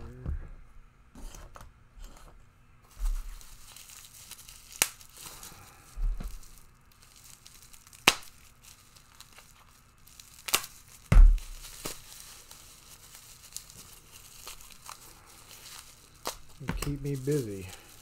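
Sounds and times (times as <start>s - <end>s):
wrapping tearing and crinkling: 2.9s - 18.0s.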